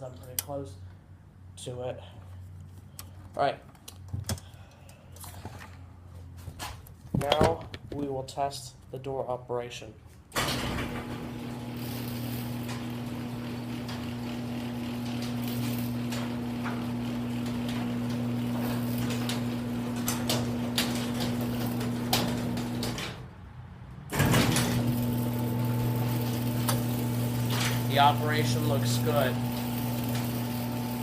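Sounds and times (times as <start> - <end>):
door clicks and rattles: 10.4 - 11.5, 12.5 - 23.2, 24.1 - 25.0
garage door opener motor: 10.4 - 23.3, 24.1 - 31.0.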